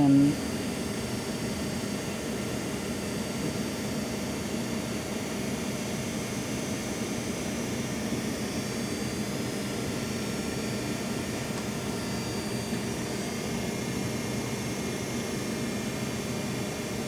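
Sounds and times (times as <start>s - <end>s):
machine droning: 0.0s - 17.0s.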